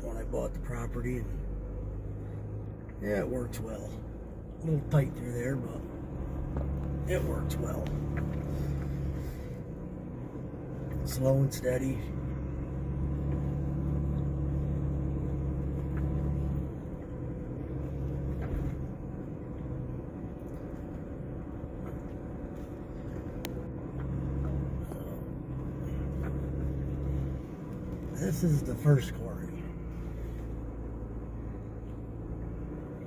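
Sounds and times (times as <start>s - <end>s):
truck engine low drone: 0.0s - 33.0s.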